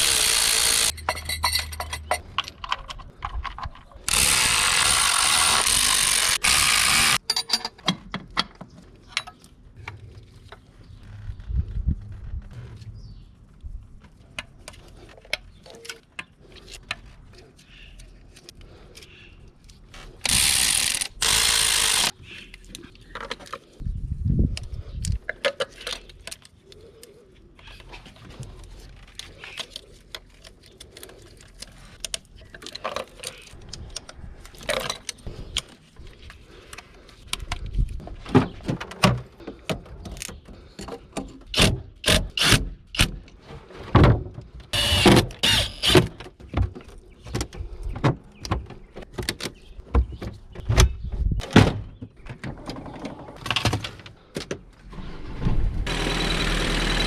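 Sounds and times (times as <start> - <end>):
hand tools ratcheting and clinking: 0.0 - 8.6, 20.2 - 22.1, 44.8 - 46.2.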